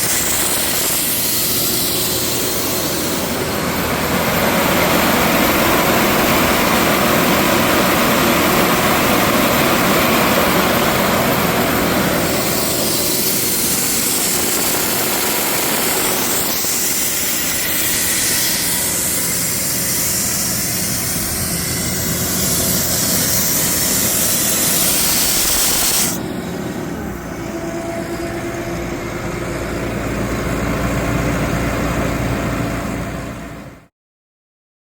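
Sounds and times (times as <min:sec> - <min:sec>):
compressed air hissing: 0:00.0 - 0:03.6, 0:11.8 - 0:26.6
diesel engine humming: 0:00.0 - 0:33.8.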